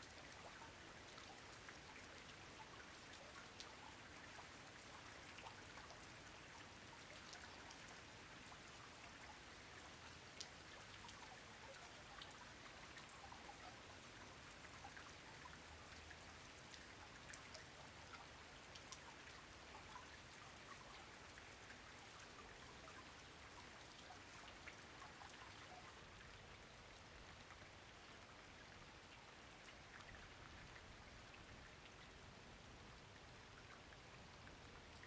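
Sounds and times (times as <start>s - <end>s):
faint steady rain: 0.0s - 35.0s
raindrops ticking: 0.3s - 11.2s, 16.7s - 20.2s.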